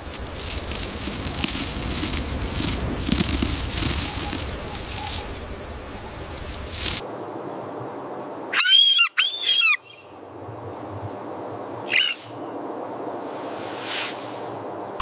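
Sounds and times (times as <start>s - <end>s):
bird calling: 0.0s - 7.0s.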